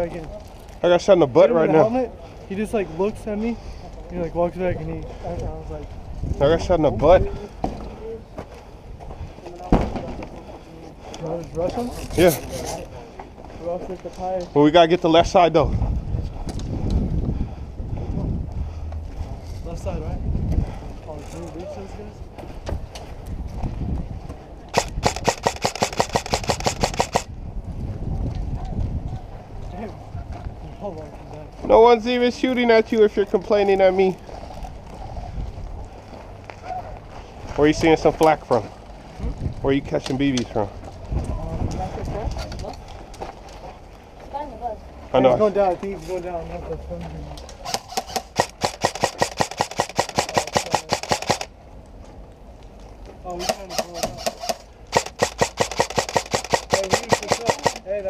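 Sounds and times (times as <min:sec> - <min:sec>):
airsoft rifle rapid shots: 0:24.7 - 0:27.3, 0:47.7 - 0:51.5, 0:53.4 - 0:57.9.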